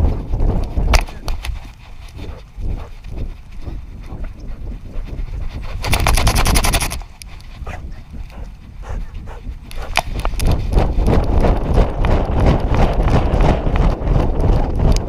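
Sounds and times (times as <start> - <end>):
wind rumble on camera: 0.0 - 15.0
dog panting: 1.3 - 11.6.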